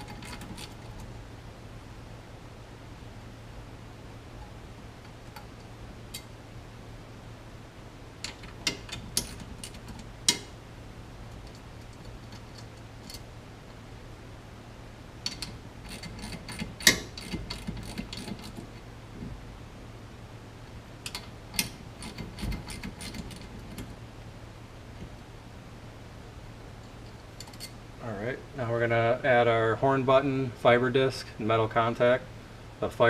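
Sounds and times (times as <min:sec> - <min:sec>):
small metal parts clicking: 0:00.0 - 0:01.1, 0:08.2 - 0:10.5, 0:15.2 - 0:18.8, 0:21.0 - 0:23.9
steady low hum: 0:00.0 - 0:33.0.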